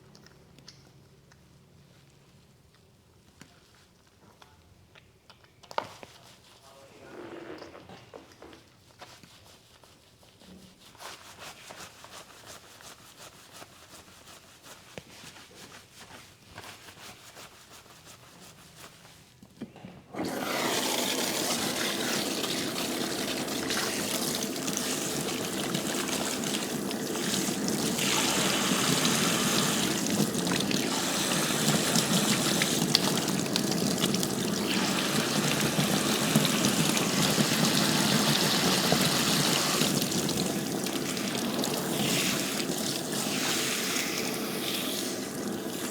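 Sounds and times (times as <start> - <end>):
running water: 20.2 - 45.9.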